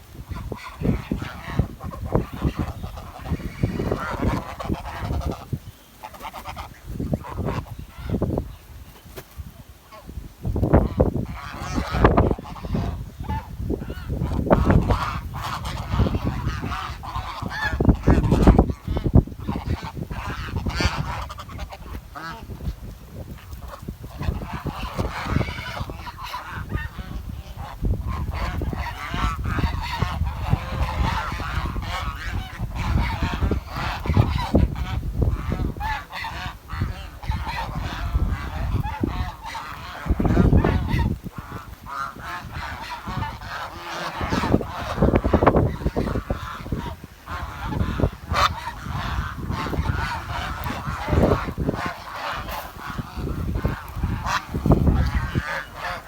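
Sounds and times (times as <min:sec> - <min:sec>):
swan honking calls: 0:00.2 - 0:08.2, 0:23.4 - 0:56.0.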